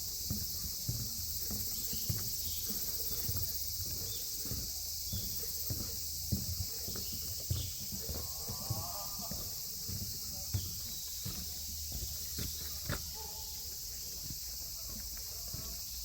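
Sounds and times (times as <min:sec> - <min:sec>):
footsteps on forest trail: 0:00.0 - 0:16.0
insects chorus: 0:00.0 - 0:16.0.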